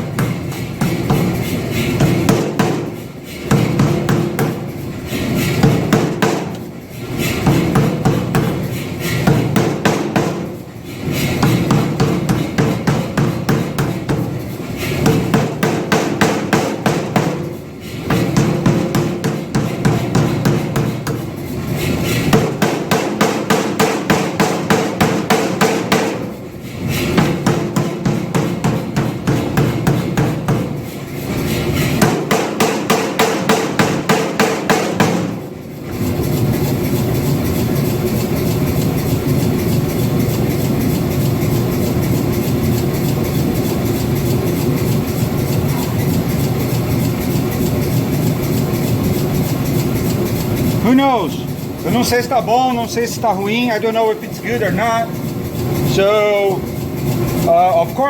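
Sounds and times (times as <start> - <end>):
power hammer striking steel: 0.0 - 36.1
steady mechanical hum: 0.0 - 58.0.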